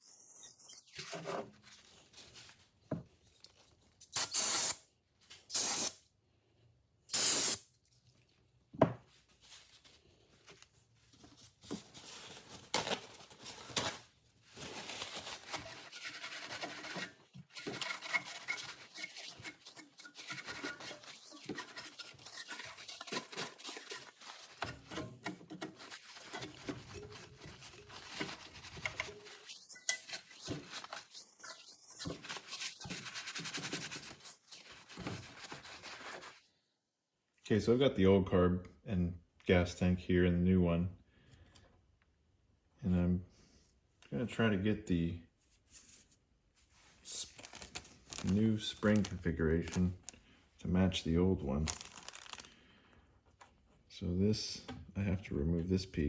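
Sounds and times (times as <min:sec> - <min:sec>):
rubbing and scraping of small parts: 0:00.0 - 0:04.8, 0:05.4 - 0:06.0, 0:09.1 - 0:36.4, 0:45.6 - 0:50.2, 0:51.0 - 0:52.6
short spray hiss: 0:07.1 - 0:07.6.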